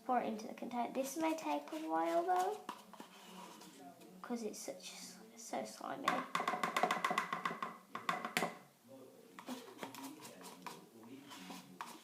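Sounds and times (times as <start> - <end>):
spoon scraping thick slime: 1.2 - 3.8, 9.4 - 12.0.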